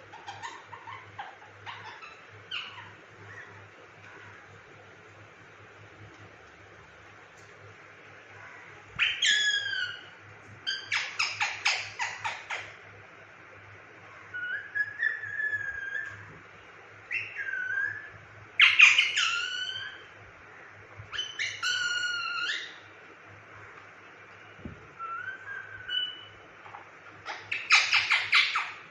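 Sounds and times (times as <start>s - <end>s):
parrot calling and whistling: 0.1s - 3.6s, 9.0s - 12.8s, 14.3s - 16.3s, 17.1s - 20.1s, 21.1s - 22.9s, 25.0s - 26.4s, 27.2s - 28.9s.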